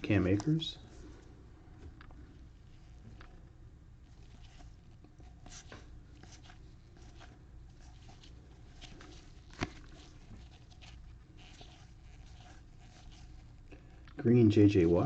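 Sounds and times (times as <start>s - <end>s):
trading cards rustling: 4.1s - 14.0s.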